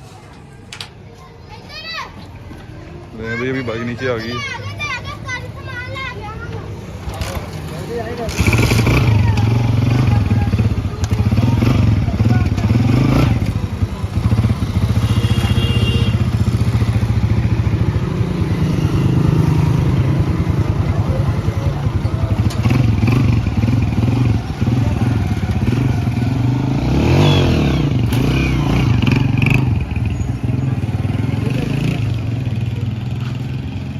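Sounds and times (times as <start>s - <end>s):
motorcycle engine running: 8.3s - 33.9s.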